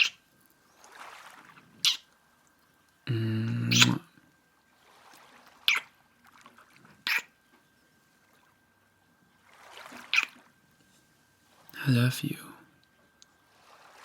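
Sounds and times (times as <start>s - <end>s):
man humming: 3.1s - 4.0s
kissing sounds: 3.6s - 4.0s.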